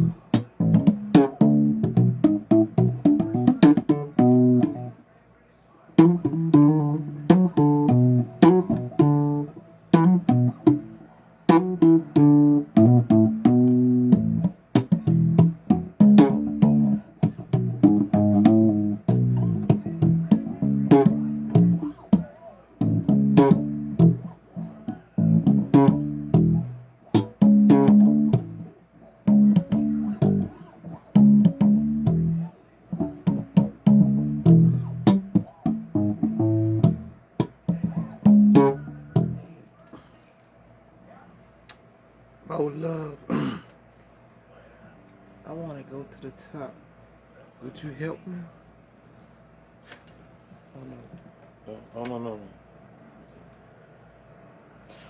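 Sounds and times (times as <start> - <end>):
electric bass guitar: 0.0 - 5.0, 6.0 - 39.6.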